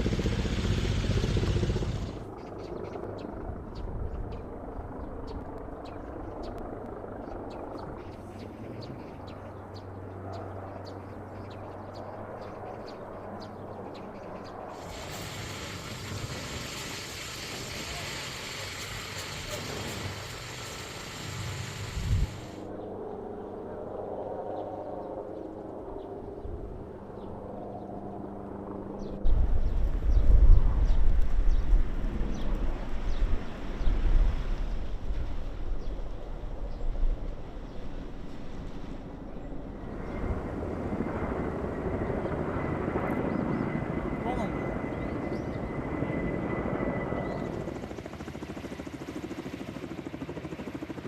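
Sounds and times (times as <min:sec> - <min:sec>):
engine drone: 0:00.0 - 0:02.3, 0:14.7 - 0:22.7
distant helicopter rotor: 0:00.0 - 0:51.0.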